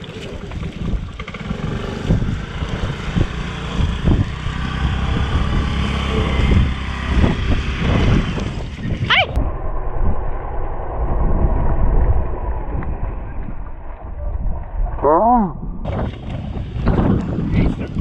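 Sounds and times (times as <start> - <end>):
motorcycle engine rumble: 0.0 - 15.2
wind buffeting microphone: 0.0 - 18.0
descending warbling sound: 4.9 - 15.9.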